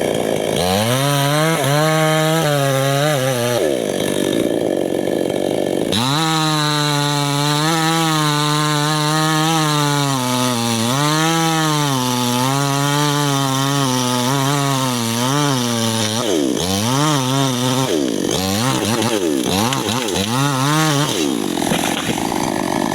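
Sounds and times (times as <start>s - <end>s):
chainsaw cutting wood: 0.0s - 22.9s.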